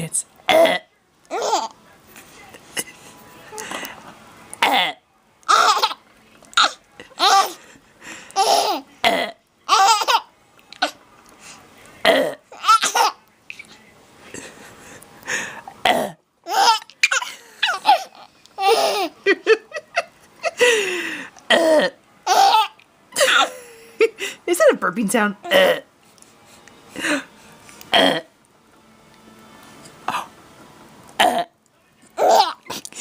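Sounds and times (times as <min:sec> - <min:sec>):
baby burping: 0:00.5 - 0:01.7, 0:04.6 - 0:06.0, 0:08.4 - 0:10.0, 0:12.0 - 0:13.2, 0:15.8 - 0:19.0, 0:21.5 - 0:22.7, 0:25.4 - 0:25.9, 0:27.9 - 0:28.3, 0:31.2 - 0:31.6
baby laughing: 0:01.3 - 0:01.7, 0:05.5 - 0:06.0, 0:06.6 - 0:07.6, 0:08.4 - 0:08.8, 0:09.7 - 0:10.3, 0:12.6 - 0:13.2, 0:16.5 - 0:20.6, 0:22.3 - 0:23.6, 0:32.2 - 0:32.9.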